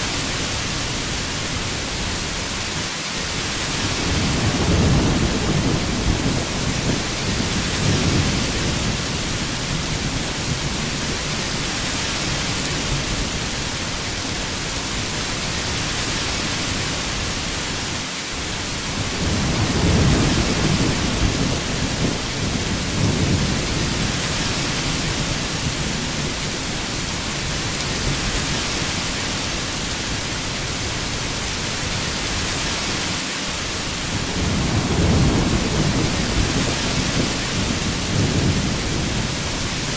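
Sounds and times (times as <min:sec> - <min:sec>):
heavy rain: 0:00.0 - 0:39.9
low rolling thunder: 0:03.9 - 0:11.3, 0:18.9 - 0:26.6, 0:34.1 - 0:39.9.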